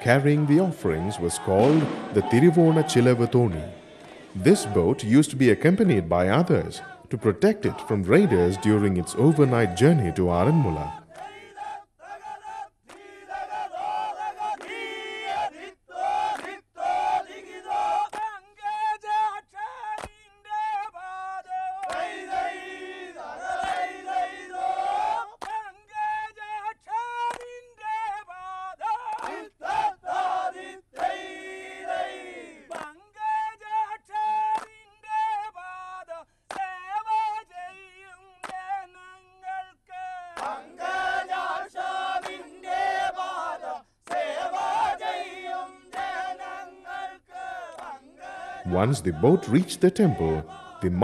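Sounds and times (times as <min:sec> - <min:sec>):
sharp beats: 0:01.4 - 0:05.5
men singing in unison: 0:21.0 - 0:25.4, 0:35.1 - 0:50.8.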